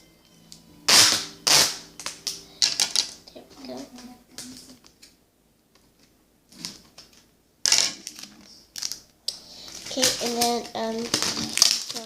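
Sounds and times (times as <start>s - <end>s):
duct tape ripping off roll: 0.9s - 3.2s, 6.5s - 9.0s, 9.9s - 12.0s.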